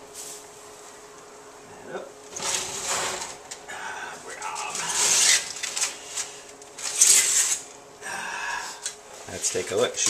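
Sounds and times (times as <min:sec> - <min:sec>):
foil rustling: 0:04.5 - 0:07.8.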